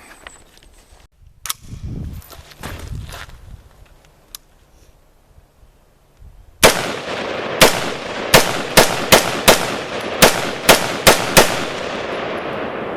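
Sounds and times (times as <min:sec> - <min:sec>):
rapid gunfire: 0:06.6 - 0:12.0.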